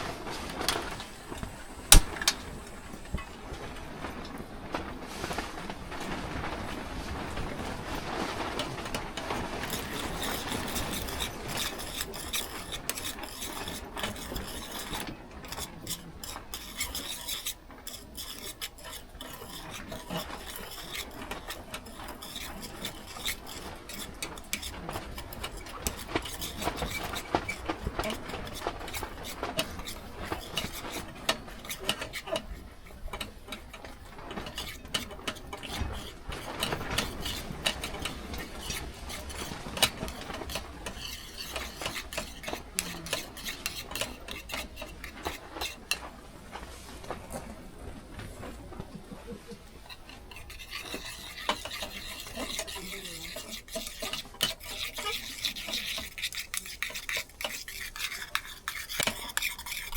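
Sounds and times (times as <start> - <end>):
utensil scraping metal ladle: 0.0 - 3.4, 8.5 - 46.2, 49.7 - 59.9
light taps against metal: 1.8 - 2.5.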